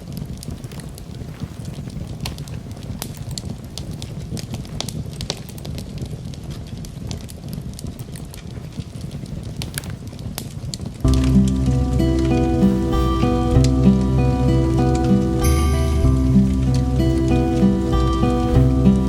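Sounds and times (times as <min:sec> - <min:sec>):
burning wood popping and snapping: 0:00.0 - 0:19.0
low rumble of flames: 0:00.0 - 0:19.0.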